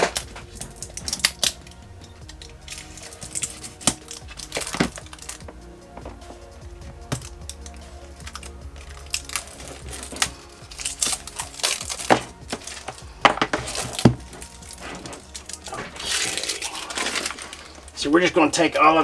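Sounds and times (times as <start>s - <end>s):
small parts clicking and clinking: 0.0s - 18.0s
faint background music: 0.0s - 19.0s.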